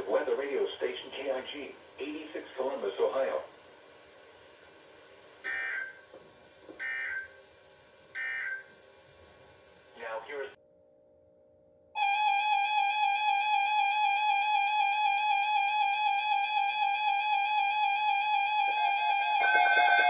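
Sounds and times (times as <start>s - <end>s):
electronic alarm tone: 12.0s - 20.0s.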